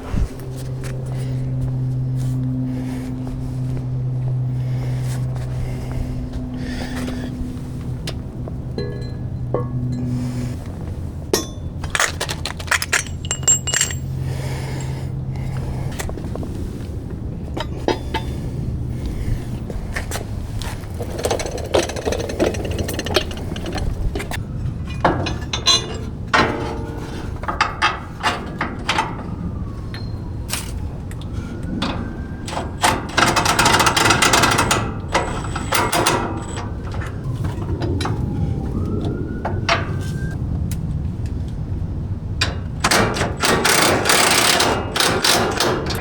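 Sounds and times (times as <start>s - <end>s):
steady low hum: 0.0s - 42.8s
metal tools clinking and knocking: 8.8s - 10.3s, 11.4s - 15.0s, 17.5s - 18.5s, 20.8s - 38.9s, 42.4s - 46.0s
rapid rattling: 20.6s - 24.4s.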